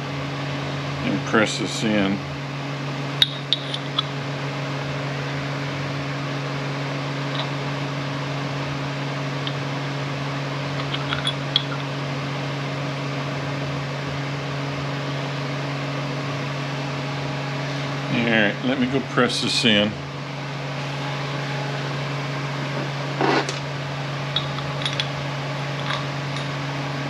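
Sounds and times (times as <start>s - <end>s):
low machine hum: 0.0s - 27.0s
small metal parts clicking: 10.8s - 11.8s, 24.4s - 25.1s.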